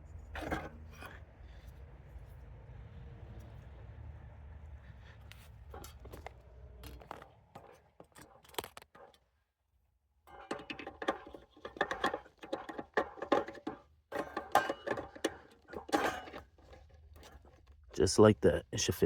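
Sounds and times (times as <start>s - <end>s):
hands clicking and scraping metal: 5.2s - 9.3s, 10.3s - 18.1s
metallic clicking and rattling: 10.3s - 17.8s.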